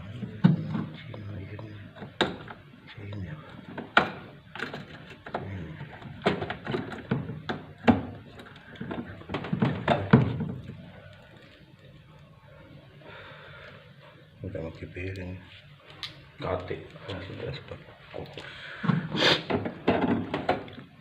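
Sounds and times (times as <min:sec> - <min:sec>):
hard objects knocking and clattering: 0:00.1 - 0:02.7, 0:03.4 - 0:11.5, 0:18.8 - 0:21.0.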